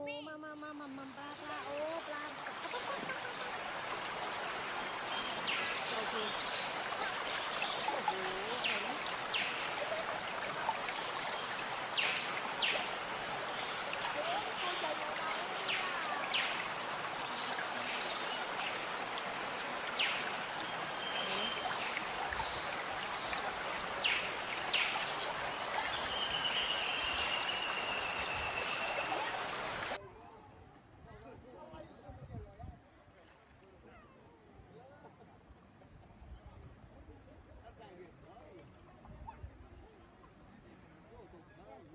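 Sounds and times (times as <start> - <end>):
bird chirps: 0.6 - 19.4, 20.0 - 29.6
waterfall rushing: 1.4 - 30.0.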